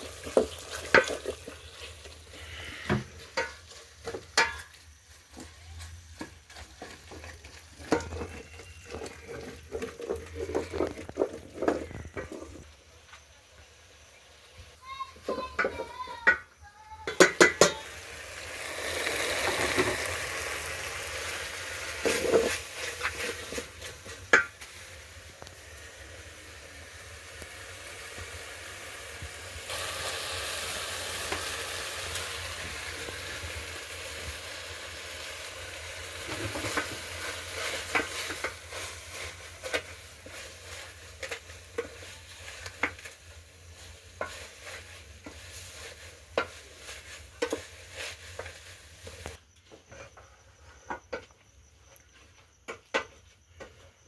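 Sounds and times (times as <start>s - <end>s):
utensil knocking and scraping pot: 0.0s - 12.8s, 14.9s - 16.4s, 17.0s - 18.0s, 19.0s - 24.8s, 36.0s - 50.2s
food sizzling in a pot: 0.0s - 49.4s.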